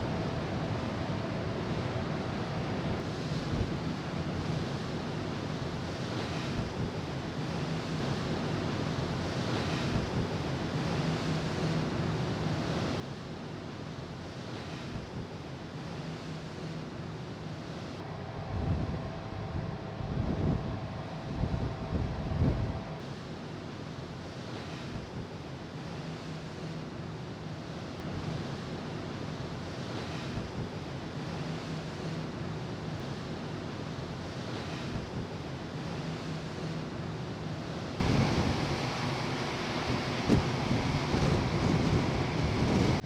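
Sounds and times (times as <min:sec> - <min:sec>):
rushing sea water: 0:00.0 - 0:13.1, 0:20.9 - 0:43.0
faint low ship hum: 0:00.0 - 0:43.0
wind: 0:00.0 - 0:43.0
wind buffeting microphone: 0:18.6 - 0:22.9, 0:38.0 - 0:43.0.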